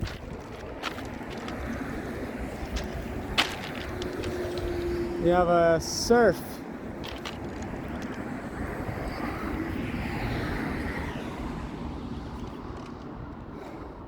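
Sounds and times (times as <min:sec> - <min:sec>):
vehicle passing by: 0:01.1 - 0:12.4.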